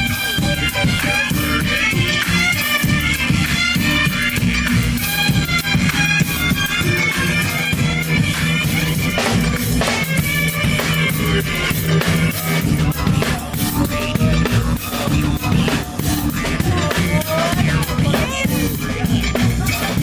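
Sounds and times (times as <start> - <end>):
band playing instrumental music: 0.0 - 20.0
drum kit beat: 0.0 - 20.0.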